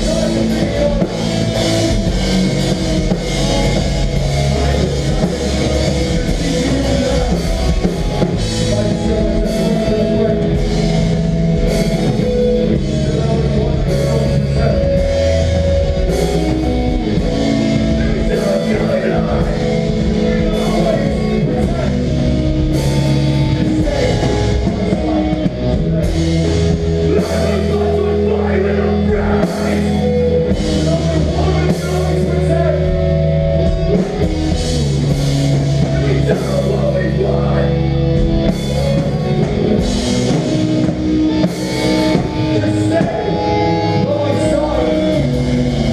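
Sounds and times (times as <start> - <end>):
hardcore band playing live: 0.0 - 45.9.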